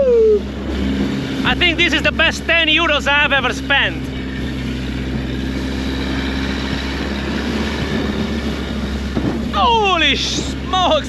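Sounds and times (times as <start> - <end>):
motorboat engine: 0.0 - 11.0
rushing water: 0.0 - 11.0
wind noise: 4.5 - 10.7.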